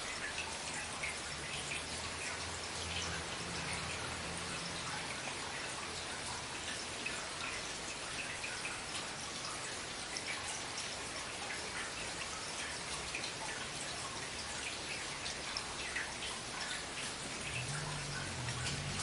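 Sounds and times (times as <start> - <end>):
rain drops pattering: 0.0 - 19.0
faint low hum: 15.5 - 19.0.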